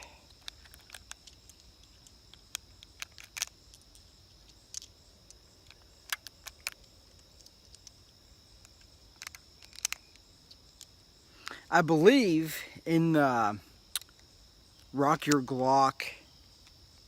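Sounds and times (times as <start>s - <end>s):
metallic clicks of cartridges handled: 0.0s - 11.7s, 13.9s - 15.5s
insects buzzing: 0.0s - 17.0s.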